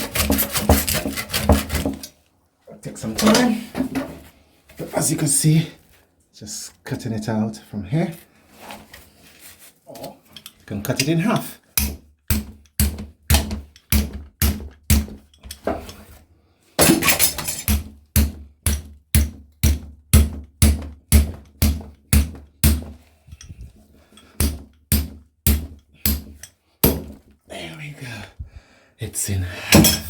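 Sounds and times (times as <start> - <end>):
metal scraping rasp: 0.0 - 2.2.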